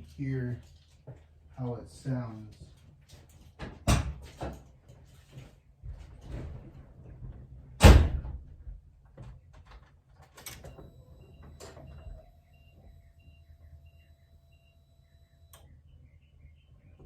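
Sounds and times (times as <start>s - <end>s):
faint steady tone: 10.6s - 17.0s
soft beeps: 10.7s - 16.6s.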